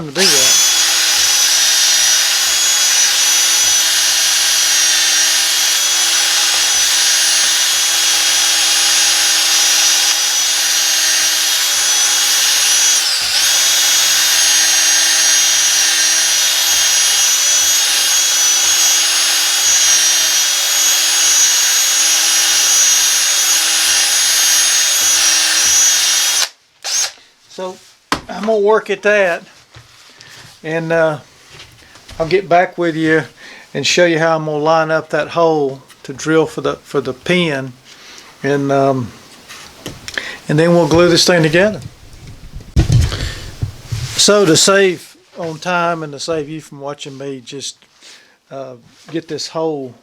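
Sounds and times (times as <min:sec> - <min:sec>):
electric drill boring into wood: 0:00.0 - 0:27.2, 0:40.9 - 0:44.7.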